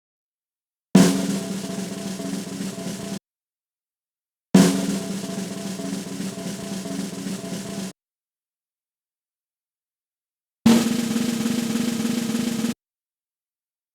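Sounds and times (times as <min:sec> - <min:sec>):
snare drum roll: 0:01.0 - 0:03.2, 0:04.6 - 0:07.9, 0:10.7 - 0:12.8.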